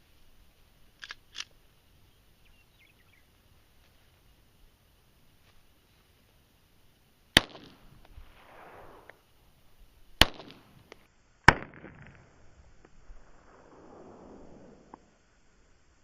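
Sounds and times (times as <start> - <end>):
pistol shots with echo: 7.4 - 9.1, 10.2 - 10.8.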